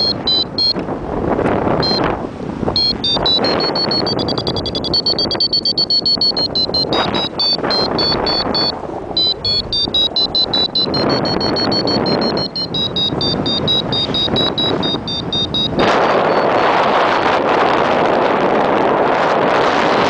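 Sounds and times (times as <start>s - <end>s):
variometer short high beeps: 0.0s - 0.8s, 1.8s - 2.1s, 2.7s - 16.7s
wind rushing on microphone: 0.0s - 20.0s.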